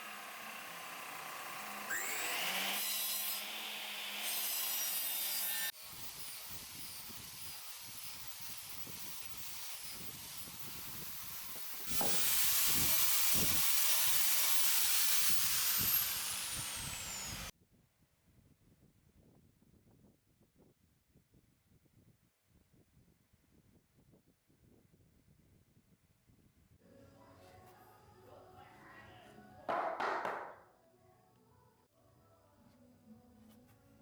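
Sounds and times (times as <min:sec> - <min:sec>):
woodworking tool hissing: 0:00.0 - 0:17.5.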